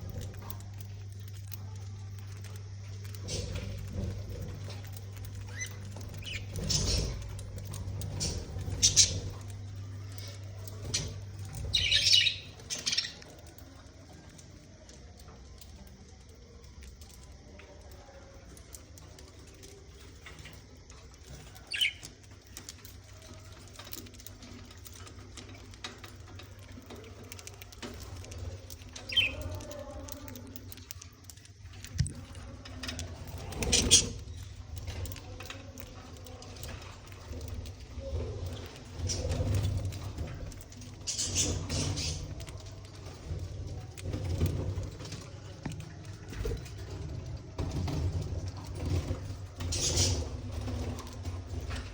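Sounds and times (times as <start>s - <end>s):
light ticks and scratches: 0.0s - 51.9s
budgerigars chirping: 11.6s - 13.2s, 21.7s - 22.0s.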